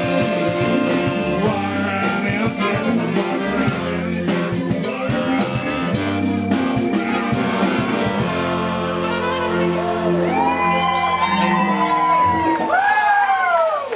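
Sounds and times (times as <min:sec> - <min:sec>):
live rock band playing: 0:00.0 - 0:12.7
crowd cheering with whoops: 0:09.4 - 0:13.9.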